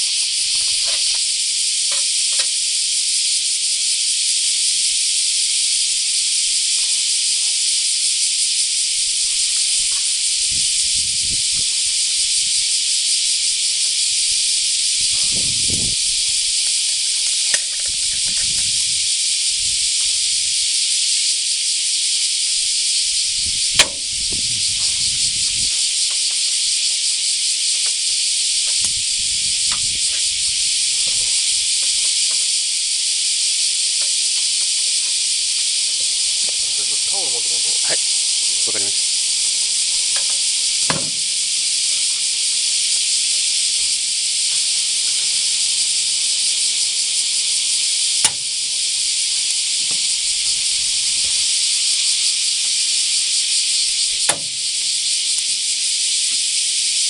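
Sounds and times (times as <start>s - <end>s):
pressurised spray hissing: 8.6s - 54.6s
low thuds: 23.2s - 25.9s
sharp click: 23.8s - 24.0s.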